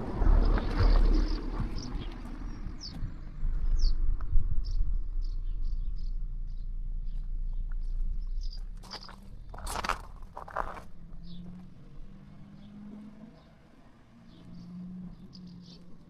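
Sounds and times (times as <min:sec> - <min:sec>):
steady low rumble: 0:00.0 - 0:11.4
small birds chirping: 0:00.2 - 0:16.0.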